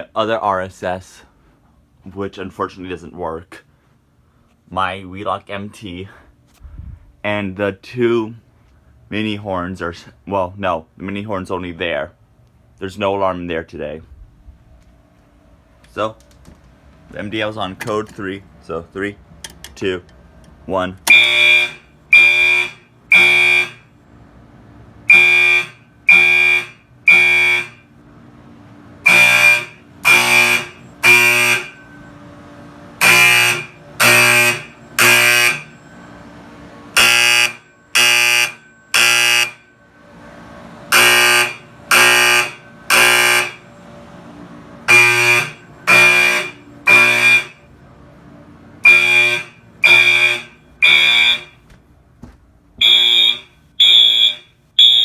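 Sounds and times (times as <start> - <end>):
fire alarm horns blasting: 21.0 - 24.4, 25.0 - 28.0, 28.9 - 47.8, 48.8 - 51.7, 52.8 - 55.0.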